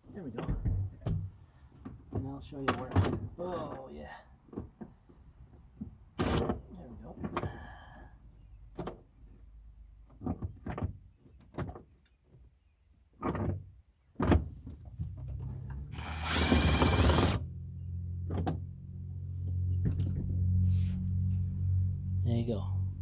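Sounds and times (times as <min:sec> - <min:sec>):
loud rasping burst: 0:15.9 - 0:17.4.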